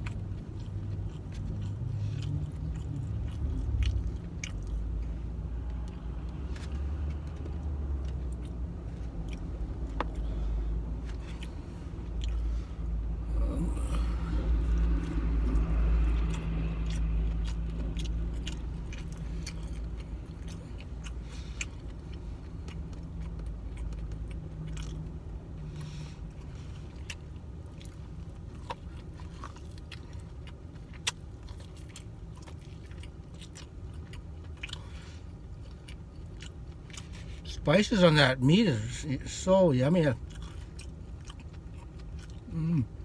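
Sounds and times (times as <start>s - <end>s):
person chewing: 0.0s - 37.6s, 40.2s - 43.0s
steady low rumble: 0.0s - 43.0s.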